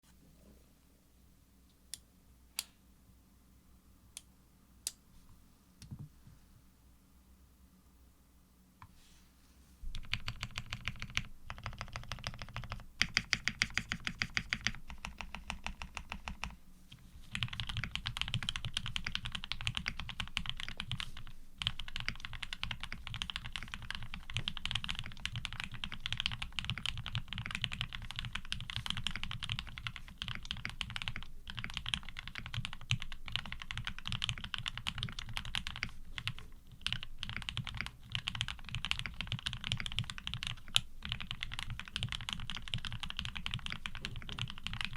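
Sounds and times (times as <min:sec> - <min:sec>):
mechanical keyboard typing: 0:09.9 - 0:16.6, 0:17.3 - 0:44.9.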